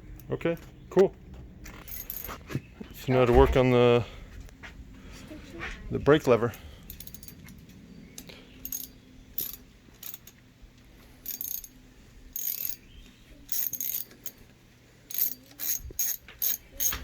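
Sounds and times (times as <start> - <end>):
socket ratchet clicking: 6.9 - 7.5, 8.6 - 10.4, 11.2 - 11.7, 12.4 - 12.8, 13.5 - 14.4, 15.1 - 17.0.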